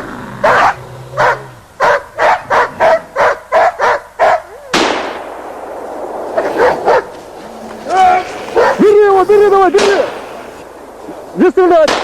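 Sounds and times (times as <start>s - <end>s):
dog barking: 0.4s - 4.5s, 6.4s - 10.6s.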